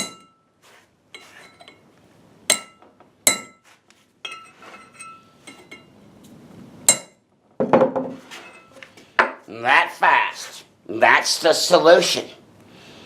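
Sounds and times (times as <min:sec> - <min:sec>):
hammer striking metal punch: 0:00.0 - 0:00.4, 0:02.5 - 0:03.6, 0:06.9 - 0:07.2.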